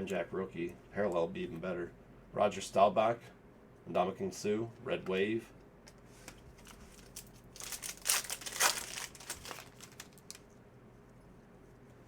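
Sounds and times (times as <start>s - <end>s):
wrapper crinkling and tearing: 6.6s - 10.4s.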